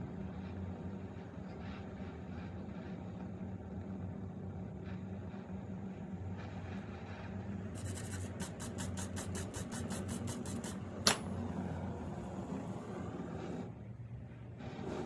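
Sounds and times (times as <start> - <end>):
steady low hum: 6.6 - 14.3
sharp click: 10.1 - 11.5.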